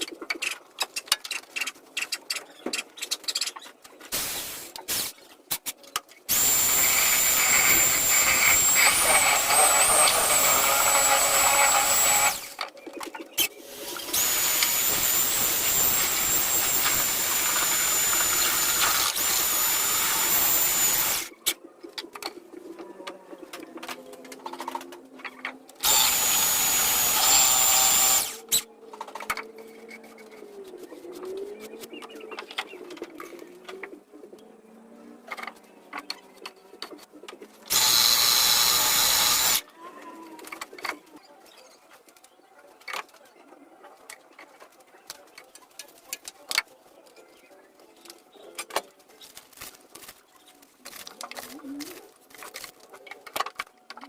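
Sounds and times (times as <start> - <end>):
power tool whining: 6.3 - 12.6, 13.7 - 21.3, 25.8 - 28.6, 37.7 - 39.6.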